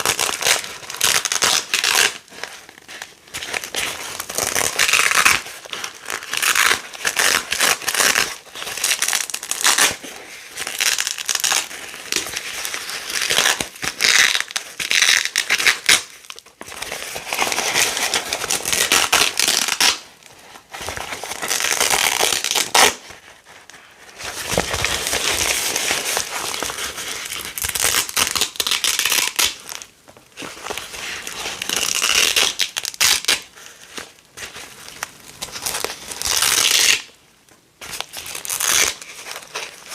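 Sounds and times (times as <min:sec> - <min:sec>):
velcro ripping apart: 0:00.0 - 0:02.3, 0:04.2 - 0:10.0, 0:10.6 - 0:16.4, 0:17.3 - 0:20.1, 0:21.1 - 0:23.1, 0:27.3 - 0:29.8, 0:31.6 - 0:33.5, 0:35.6 - 0:37.1, 0:38.2 - 0:39.9.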